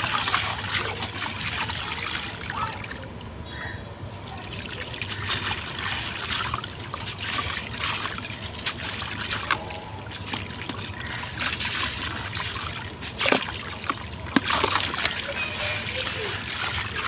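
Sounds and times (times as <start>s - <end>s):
blocks crumbling in water: 4.3s - 17.0s
crack and splash: 4.3s - 17.0s.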